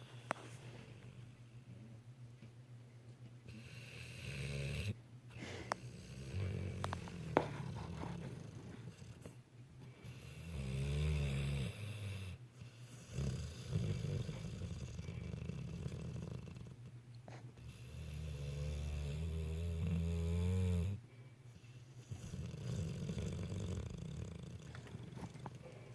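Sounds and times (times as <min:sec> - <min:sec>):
snoring: 0:03.5 - 0:09.4, 0:10.0 - 0:16.8, 0:17.6 - 0:21.0, 0:21.6 - 0:25.7.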